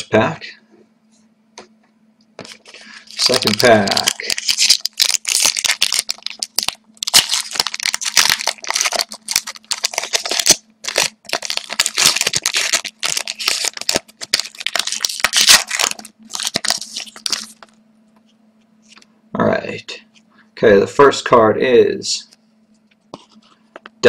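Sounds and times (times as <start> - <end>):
wrapper tearing and crinkling: 2.5 - 17.8.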